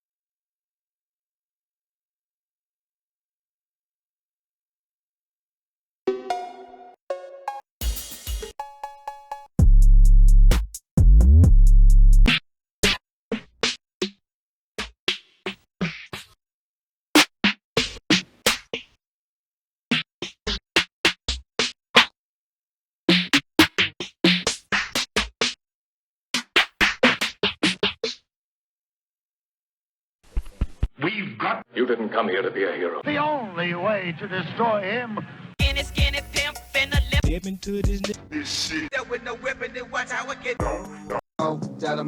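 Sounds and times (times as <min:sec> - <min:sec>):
deep bass hits: 0:09.6 - 0:12.3.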